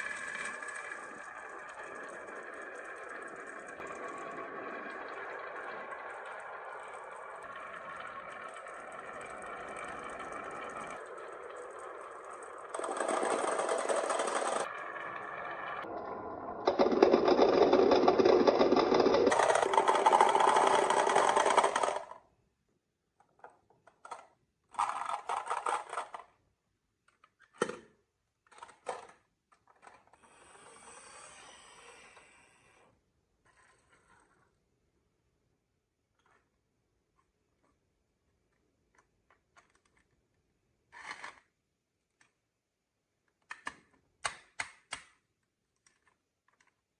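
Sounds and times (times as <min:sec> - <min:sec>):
marbles rolling down tracks: 0:00.0 - 0:22.2, 0:24.0 - 0:26.3.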